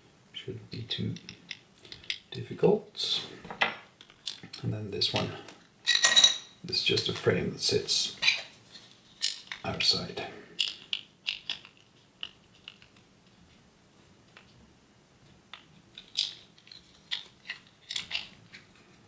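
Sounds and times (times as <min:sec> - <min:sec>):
small parts and tools rattling: 0:01.0 - 0:02.4, 0:03.5 - 0:07.3, 0:08.2 - 0:10.0, 0:10.6 - 0:13.4, 0:15.5 - 0:19.0.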